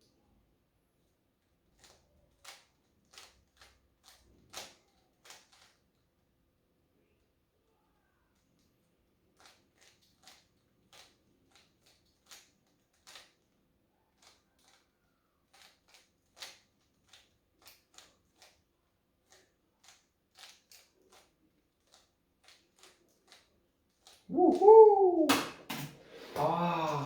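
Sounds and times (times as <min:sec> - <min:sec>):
plastic clicks of puzzle cube turning: 0:01.4 - 0:06.2, 0:08.3 - 0:24.3.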